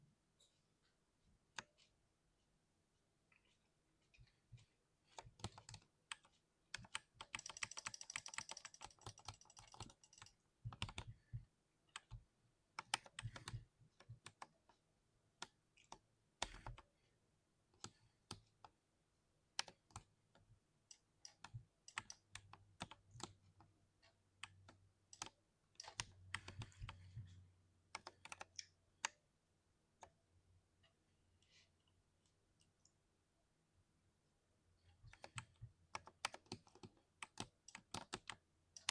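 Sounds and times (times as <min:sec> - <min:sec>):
mechanical keyboard typing: 0:05.1 - 0:11.3, 0:12.8 - 0:14.5, 0:15.4 - 0:16.8, 0:20.9 - 0:23.4, 0:24.4 - 0:27.2, 0:27.9 - 0:29.2, 0:35.1 - 0:38.9.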